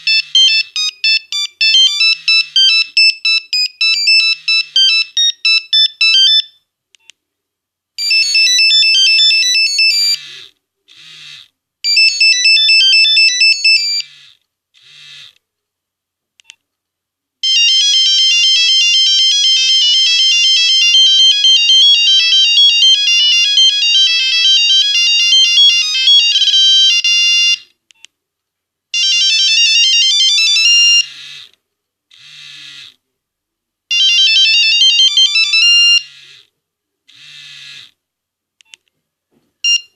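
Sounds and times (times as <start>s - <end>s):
monophonic phone ringtones: 0.0s - 6.6s, 8.0s - 10.5s, 11.9s - 14.3s, 17.4s - 27.7s, 29.0s - 31.5s, 33.9s - 36.4s, 39.6s - 39.9s.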